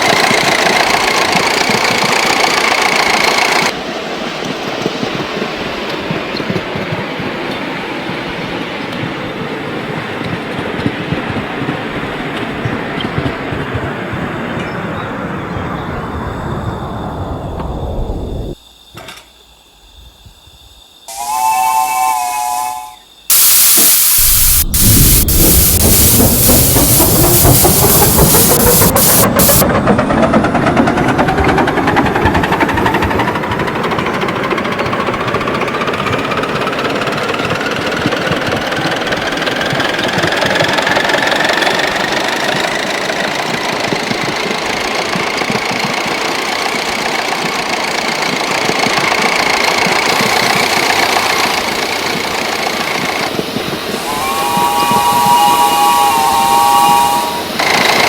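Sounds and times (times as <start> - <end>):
locomotive running rising pitch: 0.0 - 5.8, 14.0 - 18.6, 21.1 - 58.0
loud steam hiss: 21.1 - 29.6, 39.0 - 58.0
steam locomotive chord whistle: 21.1 - 29.6, 50.0 - 58.0.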